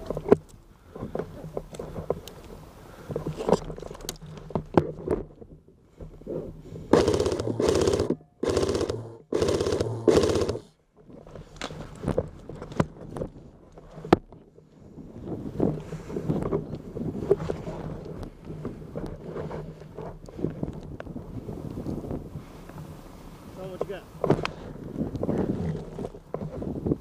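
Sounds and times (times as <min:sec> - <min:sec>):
clicks and knocks of gear: 0:00.0 - 0:06.4, 0:07.0 - 0:22.0
airsoft rifle firing full auto: 0:06.9 - 0:10.7.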